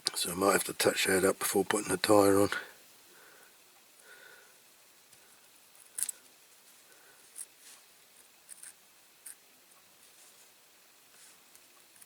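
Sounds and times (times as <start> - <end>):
small parts and tools clicking: 5.8 - 6.3, 8.5 - 9.4.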